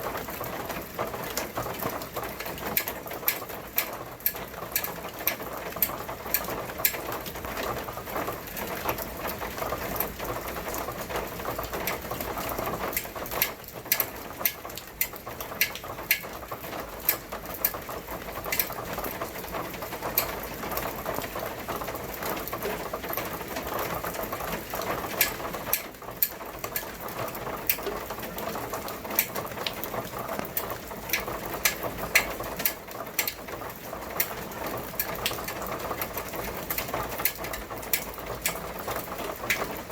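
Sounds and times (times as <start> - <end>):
rain pattering: 0.0 - 39.9
drops ticking and clicking: 2.8 - 7.0, 12.9 - 16.3, 18.4 - 18.8, 25.1 - 33.5.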